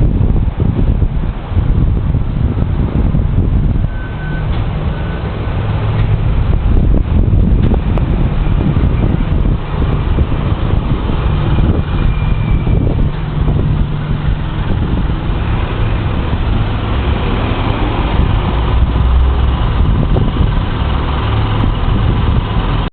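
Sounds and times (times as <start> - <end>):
car and truck engines: 0.0 - 22.9
steady low rumble: 0.0 - 22.9.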